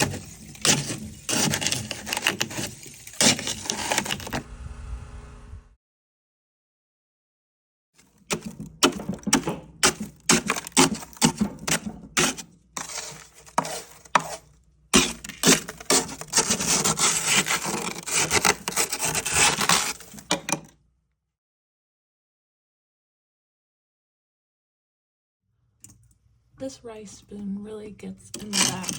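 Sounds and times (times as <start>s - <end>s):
wooden spoon scraping frost: 0.0s - 4.4s, 9.8s - 20.4s, 27.9s - 28.9s.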